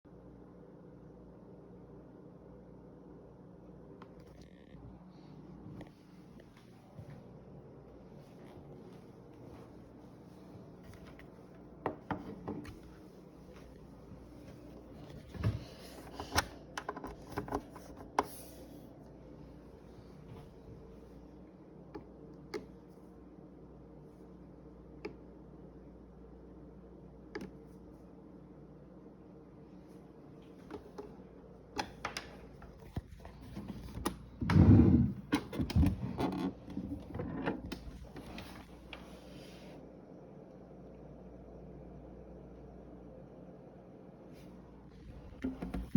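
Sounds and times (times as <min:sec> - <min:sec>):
faint steady hum: 0:00.1 - 0:45.9
clicks and knocks of handling: 0:15.0 - 0:18.4.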